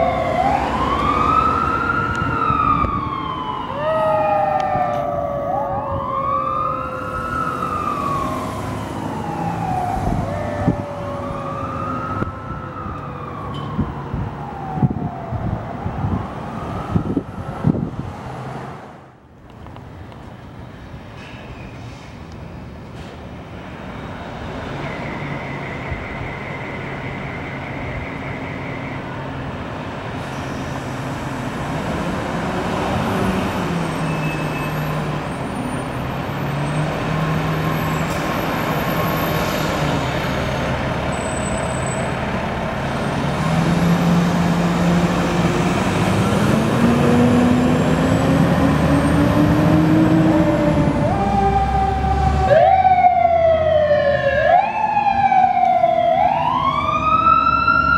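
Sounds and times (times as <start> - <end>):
siren wailing: 0.0 - 18.0, 24.8 - 29.3, 46.1 - 57.9
fire engine revving: 0.0 - 19.2, 23.7 - 57.9.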